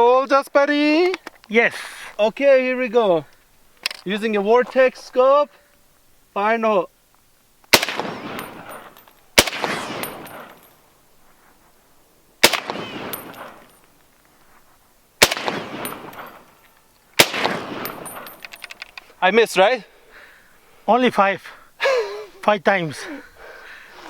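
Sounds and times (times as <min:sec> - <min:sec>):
rifle shots with echo: 0:07.7 - 0:10.7, 0:12.4 - 0:13.7, 0:15.2 - 0:16.5, 0:17.2 - 0:18.4.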